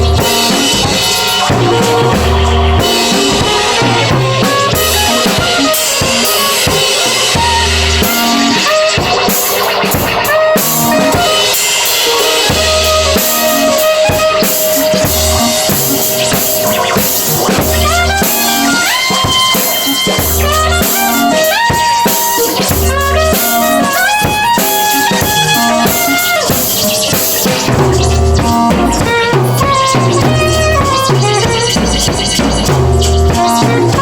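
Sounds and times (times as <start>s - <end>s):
drum kit beat: 0.0s - 34.0s
live band music: 0.0s - 34.0s.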